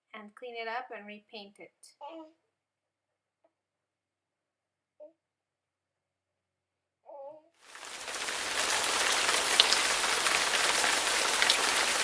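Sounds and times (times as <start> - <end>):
steady rain hiss: 7.6 - 12.0.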